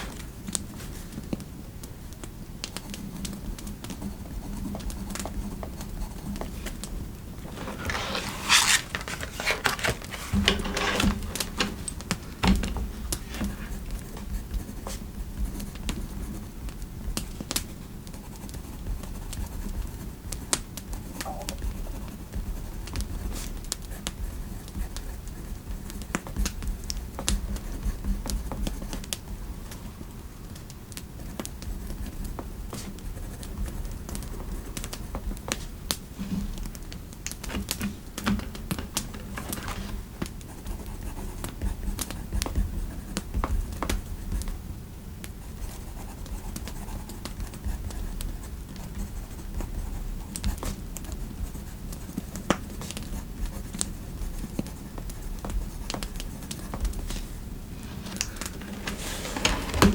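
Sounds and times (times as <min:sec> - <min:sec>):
fireplace ambience: 0:00.0 - 0:23.4, 0:25.6 - 0:59.9
knocks and rustles: 0:04.8 - 0:15.0, 0:35.4 - 0:40.8, 0:54.6 - 0:59.9.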